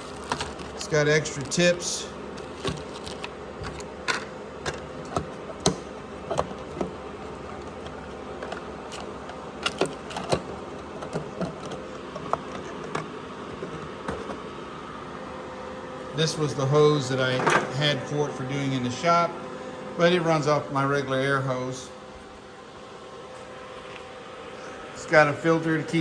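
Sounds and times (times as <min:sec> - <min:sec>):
steady hum: 0:00.0 - 0:26.0
small hard parts clicking: 0:02.4 - 0:14.4.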